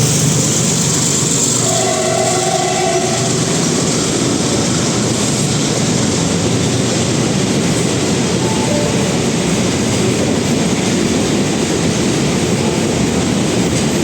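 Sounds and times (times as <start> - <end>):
train wheels rolling on rails: 0.0 - 14.0
locomotive horn: 1.6 - 3.5.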